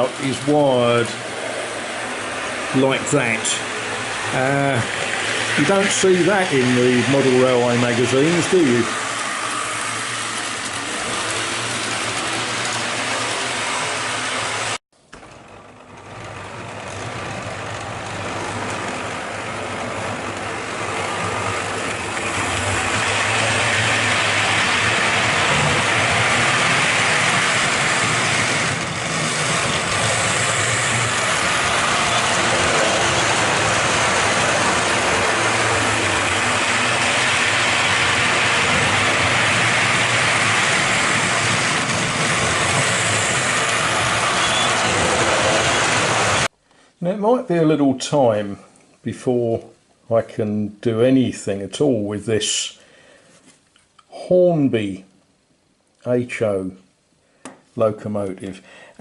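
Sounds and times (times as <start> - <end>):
model train motor whirring: 0.0 - 46.5.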